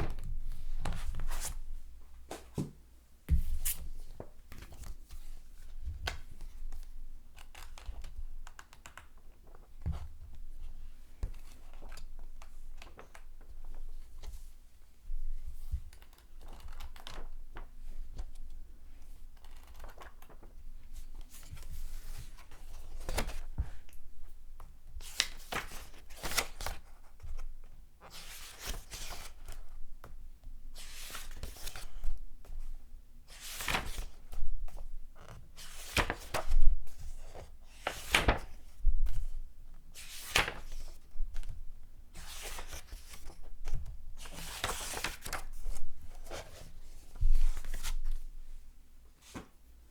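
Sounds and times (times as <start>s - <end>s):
paper pages turning: 35.6s - 38.6s, 40.0s - 41.5s, 44.2s - 46.6s.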